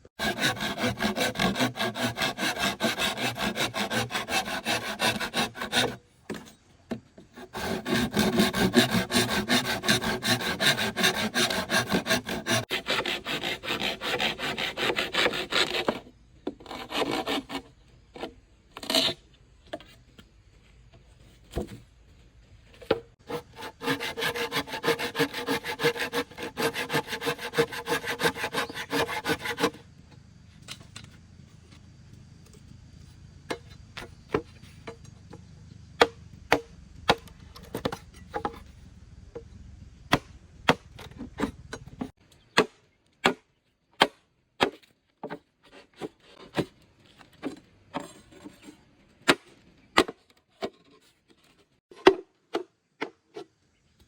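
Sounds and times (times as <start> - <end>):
hand saw cutting bamboo: 0.1 - 6.5, 7.2 - 19.2, 23.2 - 29.8.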